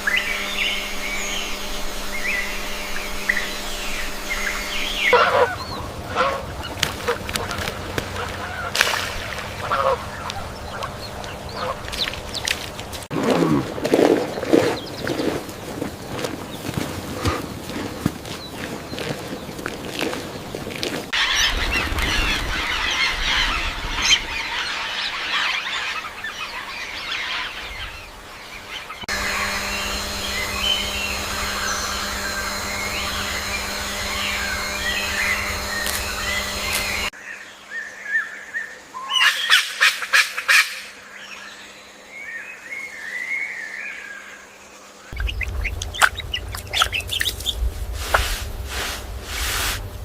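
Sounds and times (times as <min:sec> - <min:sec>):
waterfowl honking and calling: 0:00.0 - 0:13.1, 0:18.3 - 0:37.1, 0:39.1 - 0:41.0, 0:45.1 - 0:49.8.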